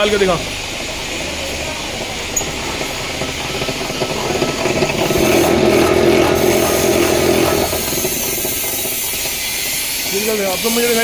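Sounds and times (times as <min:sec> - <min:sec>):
wire stripping machine motor: 0:00.7 - 0:11.0.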